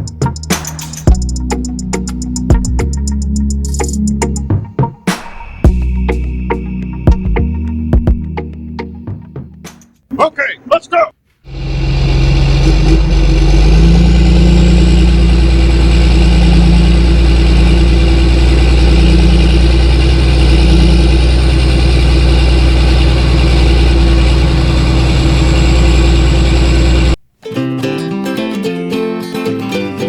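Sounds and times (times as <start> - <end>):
engine running loudly: 11.5 - 27.2.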